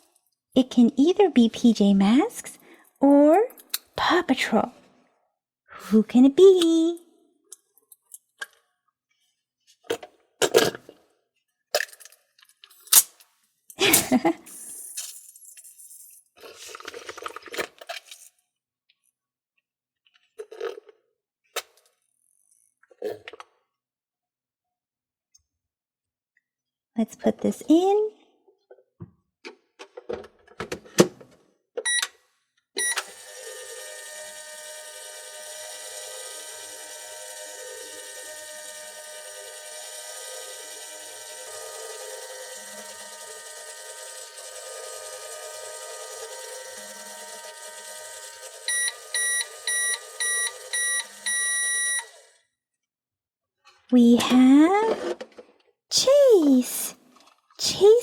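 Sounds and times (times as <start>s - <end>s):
keypad beeps: 31.8s - 32.1s, 32.8s - 33.0s, 48.7s - 52.1s
microwave humming: 32.8s - 52.3s.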